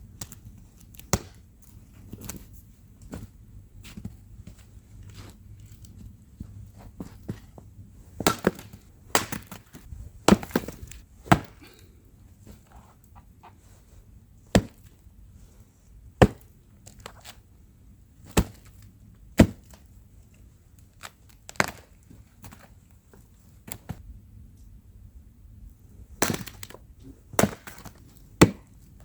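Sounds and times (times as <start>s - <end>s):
wood chopping strikes: 8.2s - 11.9s, 14.5s - 14.9s, 16.2s - 17.3s, 18.3s - 18.8s, 19.4s - 19.8s, 21.0s - 21.9s, 26.2s - 26.8s, 27.4s - 28.8s.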